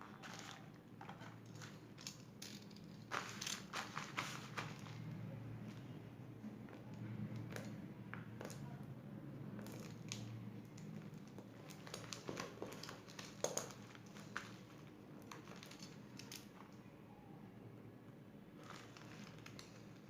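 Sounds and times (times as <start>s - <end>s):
packaging crinkling: 0.0s - 5.1s, 11.0s - 16.4s, 18.6s - 20.0s.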